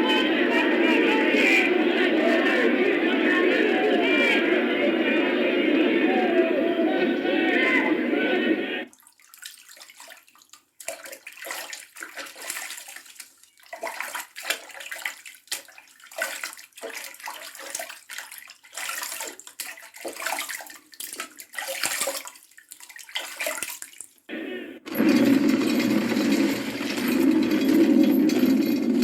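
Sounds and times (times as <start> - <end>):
water splashing in a basin: 8.9 - 24.2.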